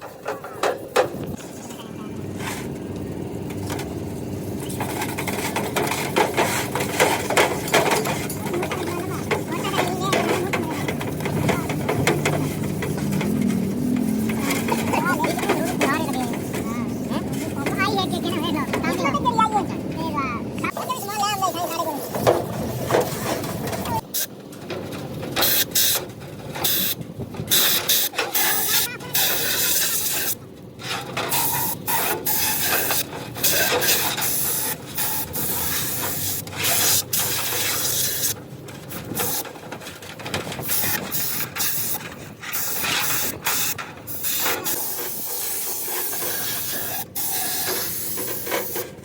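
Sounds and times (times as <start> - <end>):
pressurised spray hissing: 26.6 - 30.4, 31.3 - 38.4, 40.6 - 48.9.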